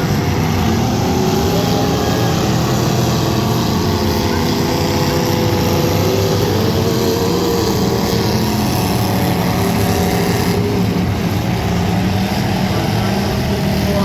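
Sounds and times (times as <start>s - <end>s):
car engine running: 0.0s - 14.0s.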